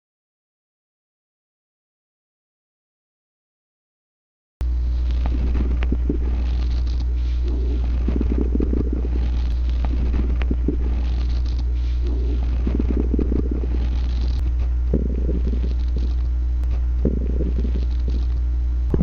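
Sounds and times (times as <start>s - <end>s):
steady low hum: 4.6s - 19.0s
stomach growling: 4.9s - 19.0s.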